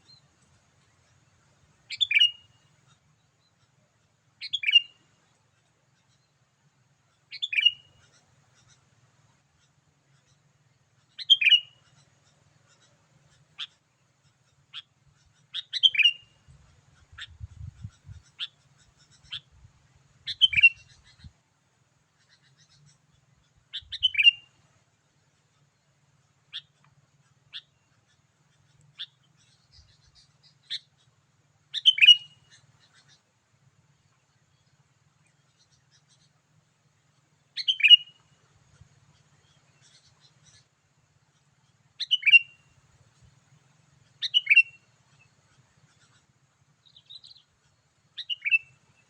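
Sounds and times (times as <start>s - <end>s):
short bird chirps: 7.3s - 8.8s, 31.7s - 33.2s, 37.6s - 38.3s, 42.0s - 42.7s, 44.2s - 46.2s, 48.1s - 49.0s.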